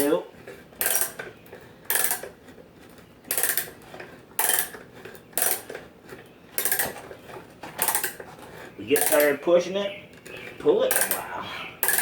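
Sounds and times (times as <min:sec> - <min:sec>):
ratchet clicking: 0:00.8 - 0:01.3, 0:01.9 - 0:02.4, 0:03.3 - 0:03.8, 0:04.4 - 0:05.8, 0:06.6 - 0:07.0, 0:07.8 - 0:08.2, 0:09.0 - 0:09.4, 0:10.9 - 0:11.2, 0:11.8 - 0:12.0
hand brace boring into wood: 0:00.8 - 0:09.4, 0:10.9 - 0:11.2, 0:11.8 - 0:12.0.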